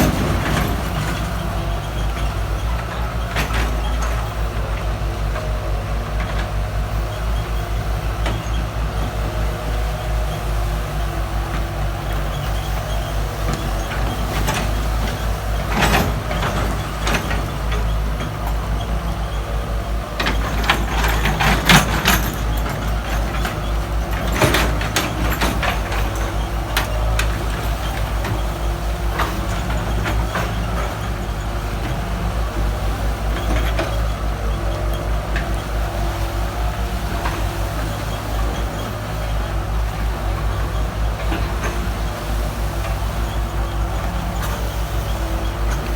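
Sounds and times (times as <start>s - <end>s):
diesel engine running: 0.0s - 45.9s
clanks and knocks: 20.0s - 32.8s.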